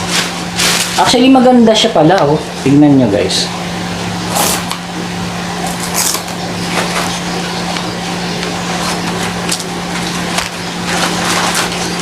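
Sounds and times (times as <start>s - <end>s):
steady low hum: 0.0s - 12.0s
plastic packaging crinkling: 8.8s - 12.0s.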